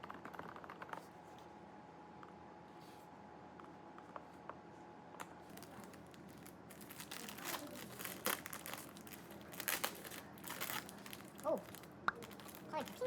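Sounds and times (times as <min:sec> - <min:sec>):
packaging crinkling: 0:05.4 - 0:13.0.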